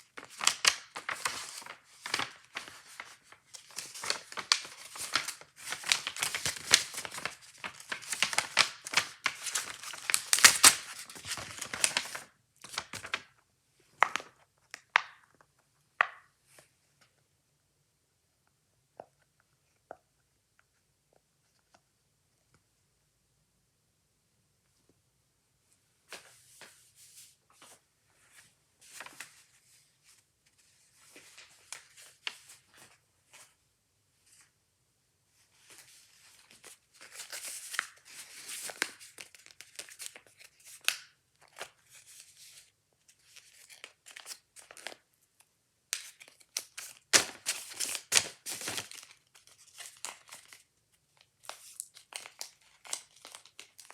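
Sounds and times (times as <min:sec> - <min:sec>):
plastic packaging crinkling: 0:00.1 - 0:13.3, 0:46.0 - 0:53.9.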